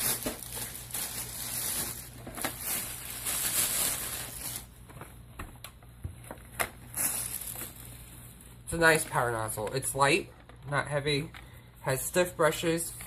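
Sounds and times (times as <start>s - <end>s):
plastic packaging crinkling: 0.0s - 5.2s, 6.5s - 11.3s.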